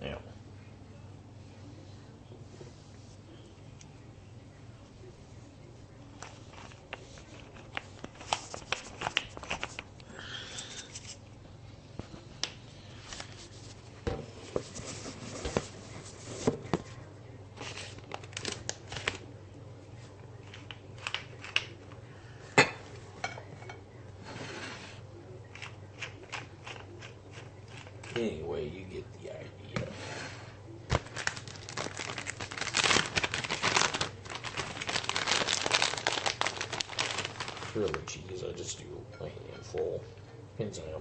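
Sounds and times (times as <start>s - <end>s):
rustling and scraping: 13.0s - 17.0s, 24.2s - 25.0s.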